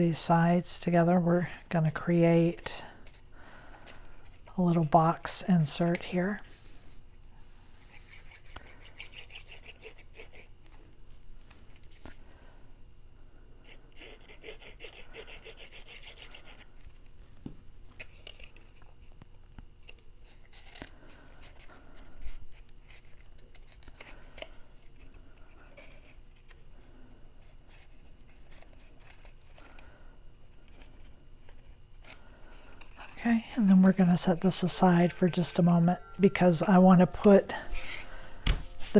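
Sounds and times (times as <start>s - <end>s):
paper rustling and scraping: 30.6s - 38.9s.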